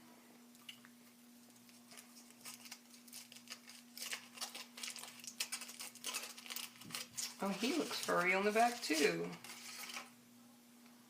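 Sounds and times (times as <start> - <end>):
faint steady hum: 0.0 - 11.0
foil wrapper crinkling: 1.4 - 10.2.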